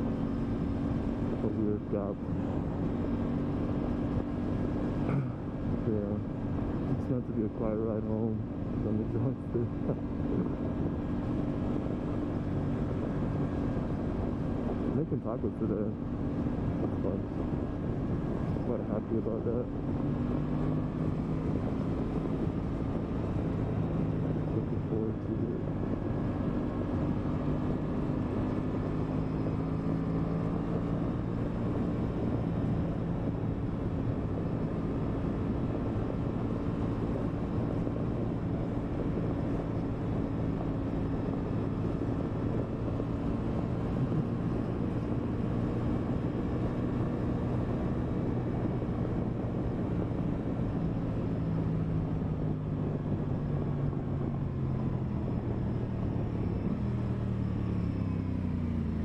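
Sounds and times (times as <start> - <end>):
motorcycle engine cruising: 0.0 - 59.0.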